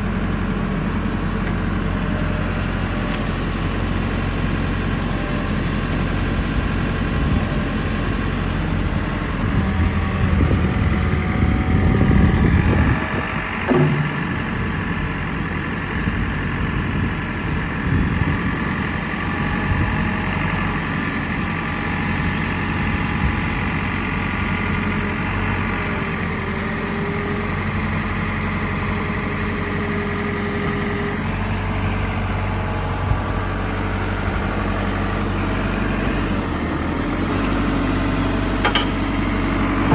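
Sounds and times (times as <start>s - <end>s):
diesel engine idling: 0.0s - 39.9s
single knock: 13.7s - 14.3s.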